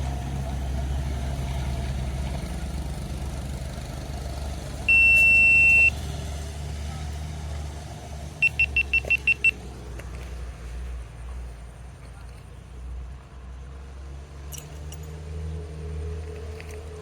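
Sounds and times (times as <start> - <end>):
low engine-like hum: 0.0 - 17.0
electronic beeper beeping: 4.9 - 5.9, 8.4 - 9.5.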